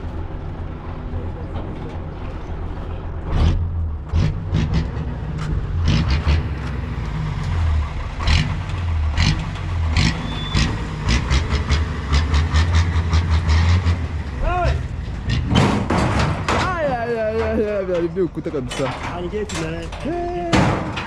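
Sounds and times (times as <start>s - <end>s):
engine humming: 0.0s - 21.0s
sharp knocks and clatter: 15.0s - 21.0s.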